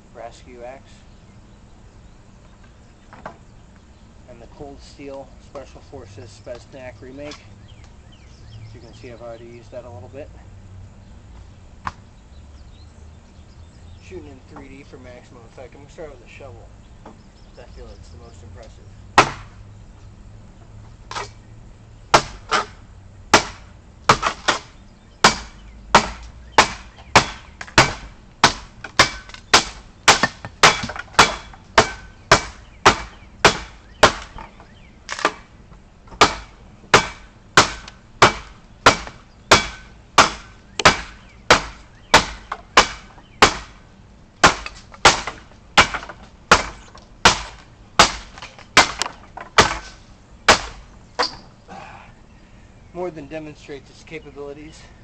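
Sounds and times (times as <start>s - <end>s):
shovel chopping into wood: 19.2s - 19.5s, 21.1s - 21.4s, 22.1s - 34.5s, 35.1s - 35.5s, 36.2s - 43.8s, 44.4s - 51.4s.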